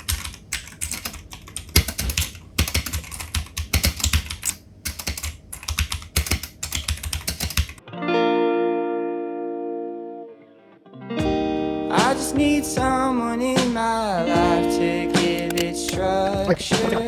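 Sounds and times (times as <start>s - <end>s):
mechanical keyboard typing: 0.0s - 7.8s, 15.3s - 16.6s
guitar chord background music: 7.8s - 17.0s.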